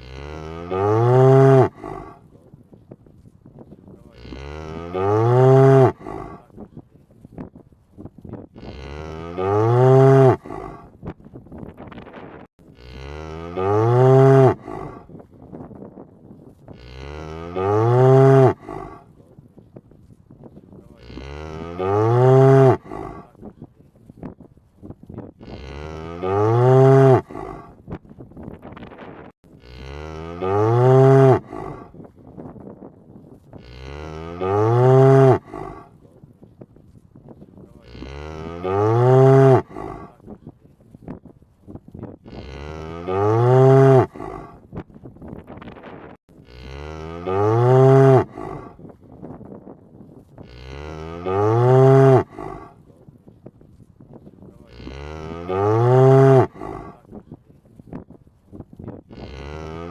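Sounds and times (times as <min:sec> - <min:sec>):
cow mooing: 0:00.0 - 0:02.2, 0:04.0 - 0:06.5, 0:08.6 - 0:10.9, 0:12.7 - 0:15.1, 0:16.7 - 0:19.1, 0:20.9 - 0:23.3, 0:25.4 - 0:27.8, 0:29.6 - 0:32.0, 0:33.6 - 0:35.9, 0:37.8 - 0:40.2, 0:42.2 - 0:44.6, 0:46.4 - 0:48.8, 0:50.4 - 0:52.8, 0:54.6 - 0:57.1, 0:59.1 - 0:59.9.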